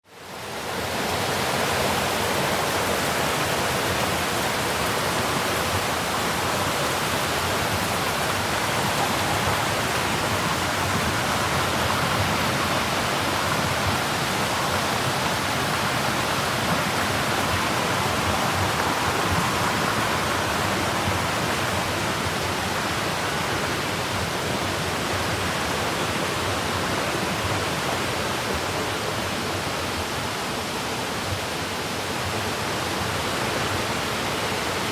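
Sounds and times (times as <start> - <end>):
stream water flowing: 0.0 - 34.9.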